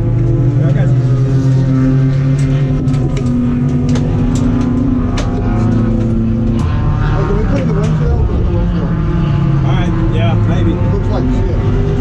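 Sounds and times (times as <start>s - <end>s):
race car engine at speed: 0.0s - 12.0s
sharp clicks and rattles: 2.2s - 9.0s.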